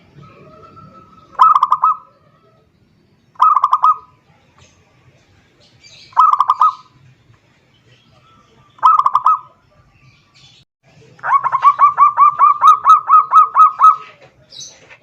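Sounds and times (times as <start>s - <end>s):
dove cooing in trills: 0.0s - 2.7s, 3.4s - 4.1s, 6.2s - 6.9s, 8.8s - 9.6s, 11.2s - 14.2s.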